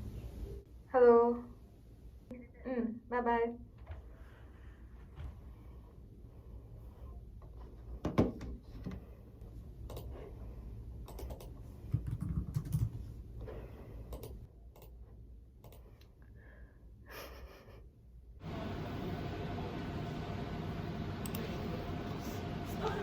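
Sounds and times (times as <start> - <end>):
steady low hum: 0.0 - 23.0
computer keyboard typing: 11.0 - 13.0.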